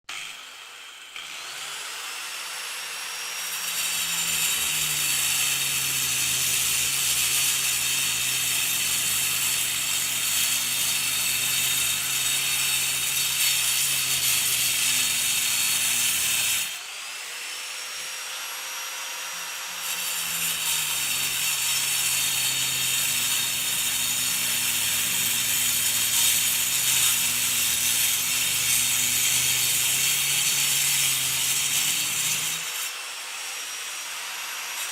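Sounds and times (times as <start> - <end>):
grinder disc cutting concrete: 0.1 - 34.9.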